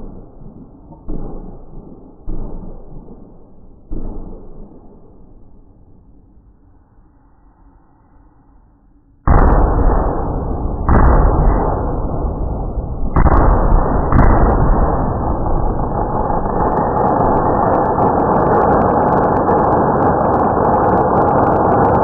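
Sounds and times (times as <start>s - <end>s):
fireworks barrage: 9.3s - 22.0s
loud firework bursts: 9.3s - 22.0s
thick crackling: 13.2s - 22.0s.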